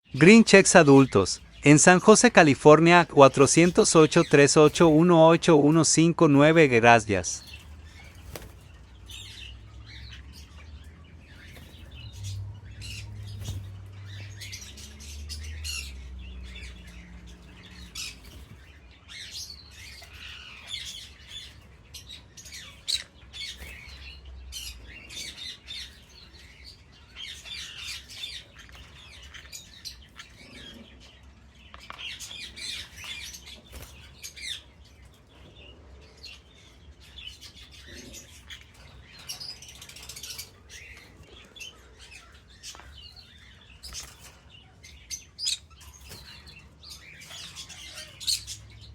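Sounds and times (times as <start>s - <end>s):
conures chirping and squawking: 0.0s - 48.9s.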